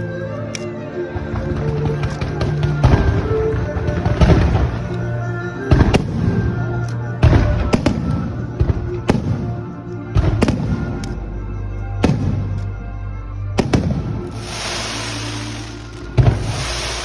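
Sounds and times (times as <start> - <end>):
music playing: 0.0 - 17.0
fireworks bursting: 1.5 - 4.9, 13.6 - 17.0.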